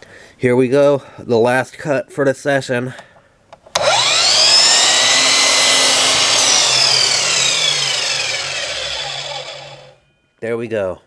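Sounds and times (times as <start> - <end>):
electric chop saw cutting wood: 3.8 - 10.0.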